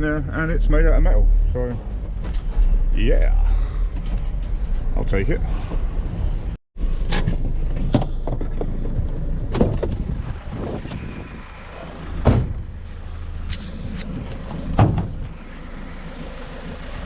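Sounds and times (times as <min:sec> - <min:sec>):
low vehicle rumble: 0:00.0 - 0:17.0
heavy thump: 0:12.2 - 0:12.7, 0:14.8 - 0:15.2.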